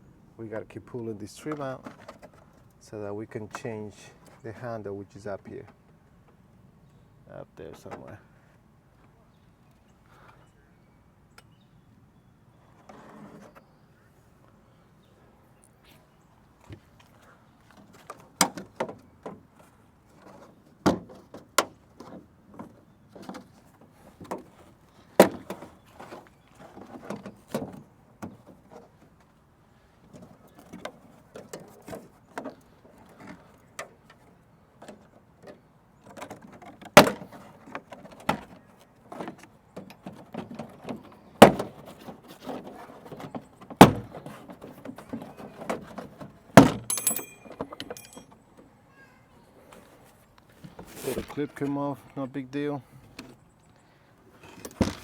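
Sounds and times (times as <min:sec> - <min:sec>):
handling rustle: 0:15.6 - 0:48.8, 0:49.5 - 0:55.0.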